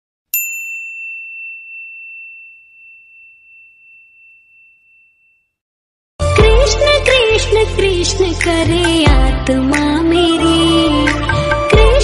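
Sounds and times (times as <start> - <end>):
high bell-like ding: 0.3 - 5.6
music: 6.2 - 12.0.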